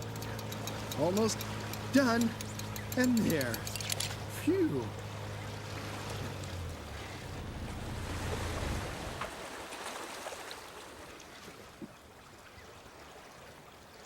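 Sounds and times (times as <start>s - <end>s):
low steady hum: 0.0s - 9.5s
water washing around boat: 0.0s - 14.0s.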